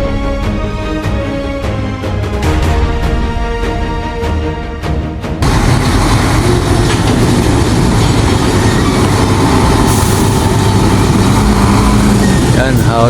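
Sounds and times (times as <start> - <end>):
low engine rumble: 5.4 - 13.0.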